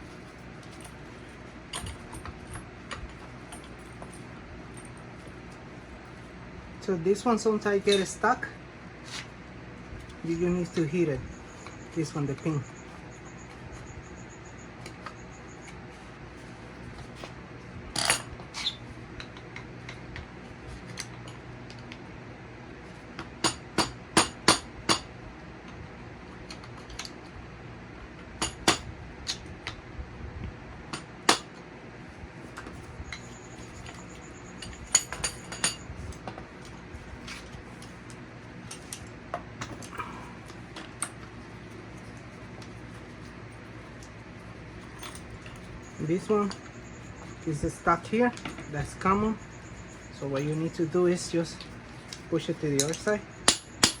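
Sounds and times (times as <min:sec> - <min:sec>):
hand tools clinking on metal: 0:07.1 - 0:08.3, 0:33.1 - 0:37.9, 0:42.0 - 0:54.0.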